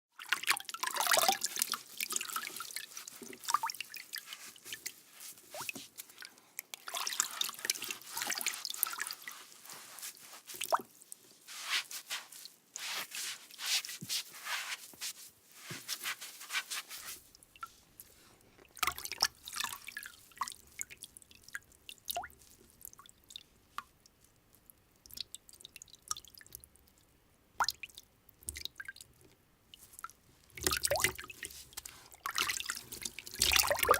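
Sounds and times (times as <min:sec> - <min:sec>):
water drips: 0:00.2 - 0:11.4, 0:17.3 - 0:17.7, 0:18.6 - 0:33.9
water splashing and sloshing: 0:00.2 - 0:17.7, 0:29.8 - 0:33.9.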